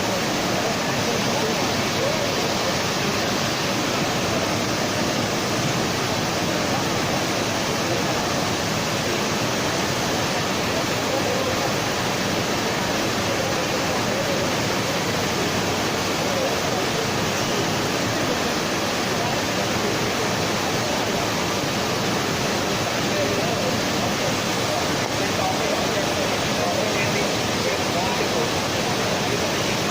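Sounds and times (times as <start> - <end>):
steady roar of factory machinery: 0.0 - 29.9.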